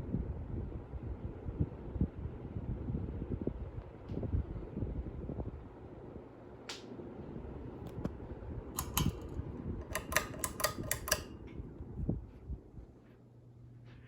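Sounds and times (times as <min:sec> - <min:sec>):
ceiling fan hum: 0:00.0 - 0:14.0
sharp clicks: 0:08.8 - 0:11.3.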